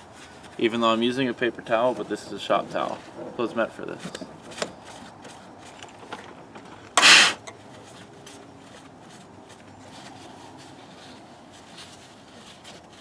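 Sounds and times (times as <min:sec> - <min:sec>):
towel rubbing on battery: 0:07.0 - 0:07.4
short hissing rasp: 0:07.0 - 0:07.5.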